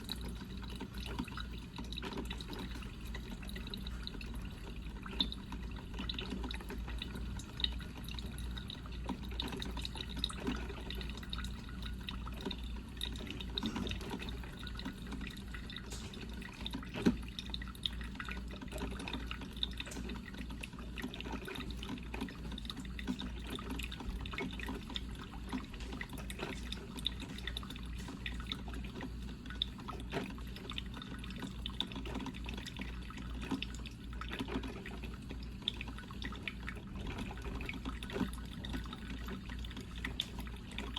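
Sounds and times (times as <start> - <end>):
coffee maker humming: 0.0 - 40.9
water dripping and popping: 0.0 - 40.9.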